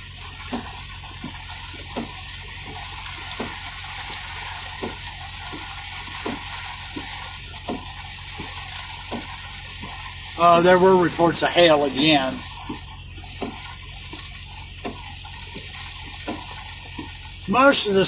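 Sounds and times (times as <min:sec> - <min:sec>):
rain falling: 0:00.0 - 0:18.0
raindrops tapping: 0:00.0 - 0:18.0.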